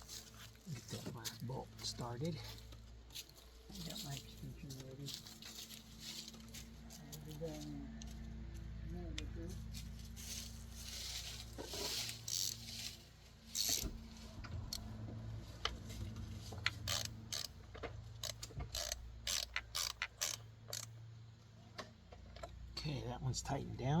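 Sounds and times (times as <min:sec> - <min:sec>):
ratchet wrench clicking: 0:12.0 - 0:12.8, 0:13.5 - 0:14.0, 0:16.6 - 0:21.0.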